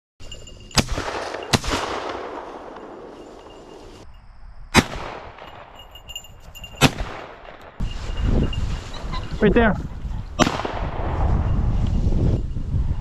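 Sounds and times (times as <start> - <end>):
shotgun shots echoing: 0.8 - 4.0, 4.7 - 5.8, 6.8 - 7.8, 10.4 - 11.2.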